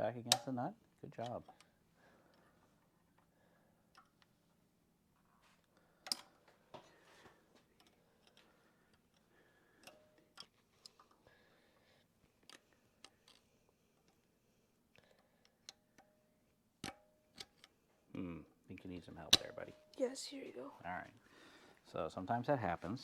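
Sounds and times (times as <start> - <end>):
faint metal clicks of pliers: 0.3 - 2.5, 6.0 - 6.4.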